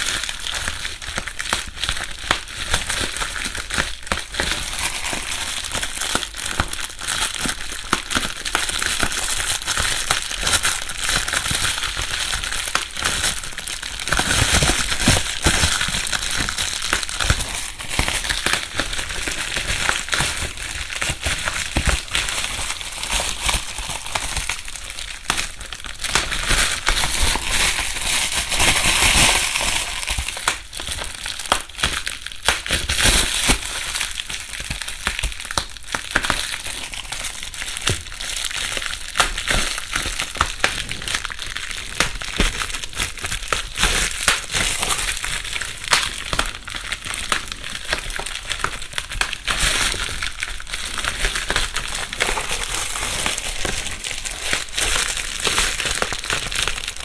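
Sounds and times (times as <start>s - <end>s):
bubble wrap bubbles popping: 0.0s - 57.0s
bubble wrap crumpling: 0.0s - 57.0s.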